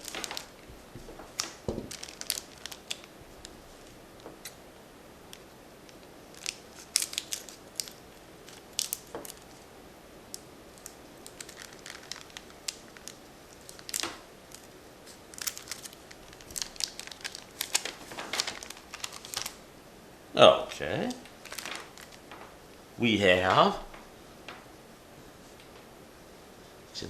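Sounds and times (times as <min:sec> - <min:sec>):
plastic wrapper crinkling and tearing: 0:00.0 - 0:04.6, 0:05.3 - 0:09.6, 0:10.3 - 0:19.6, 0:21.1 - 0:22.5.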